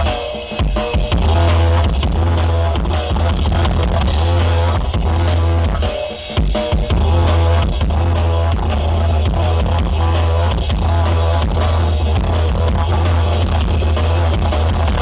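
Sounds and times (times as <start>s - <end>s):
didgeridoo drone: 0.0s - 15.0s
drum kit and percussion: 0.0s - 15.0s.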